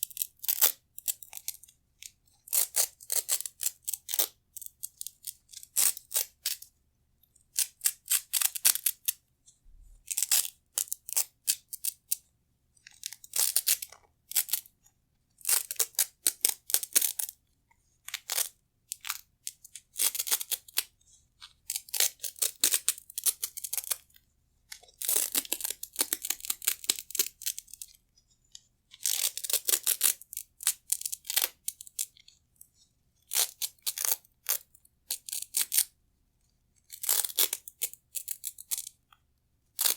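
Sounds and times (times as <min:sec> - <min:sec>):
velcro straps ripping: 0:25.0 - 0:27.9, 0:29.0 - 0:32.1, 0:37.0 - 0:38.9.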